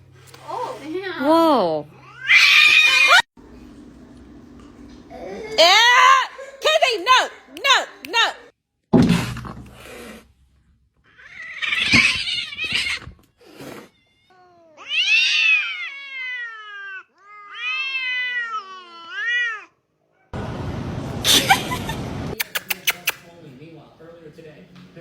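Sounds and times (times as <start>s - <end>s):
cat yowling: 2.0s - 3.3s, 11.1s - 13.1s, 13.9s - 19.8s.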